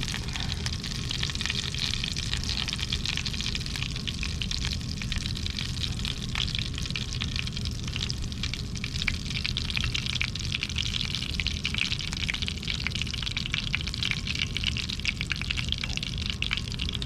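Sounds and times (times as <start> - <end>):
steady low rumble: 0.0 - 10.2
cooking fat crackling and spitting: 0.0 - 17.0.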